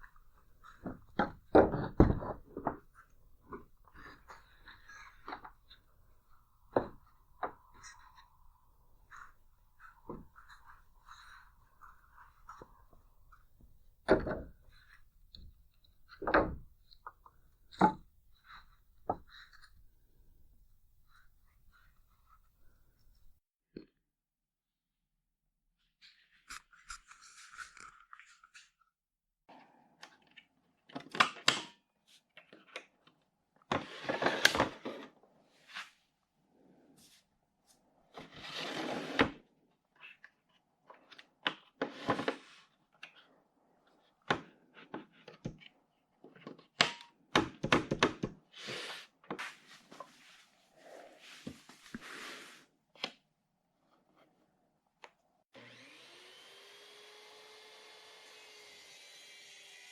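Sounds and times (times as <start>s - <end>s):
scraping or sliding noises: 0.0s - 16.3s, 33.8s - 36.0s, 38.2s - 39.4s, 41.8s - 42.7s, 48.6s - 52.8s
tools and wood knocking: 0.0s - 21.7s
small motor humming: 55.6s - 59.9s.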